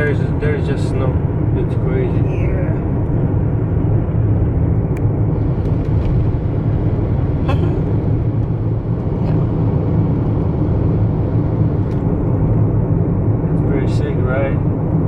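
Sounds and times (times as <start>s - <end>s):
car road and engine rumble: 0.0s - 15.0s.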